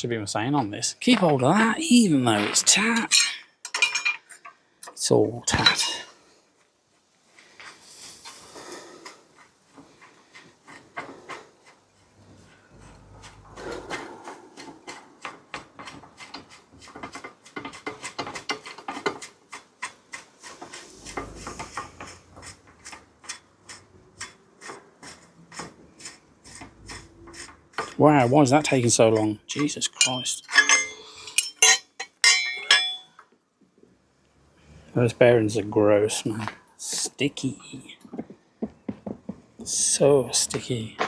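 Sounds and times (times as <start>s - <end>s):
metal parts clicking and scraping: 29.6s - 33.2s.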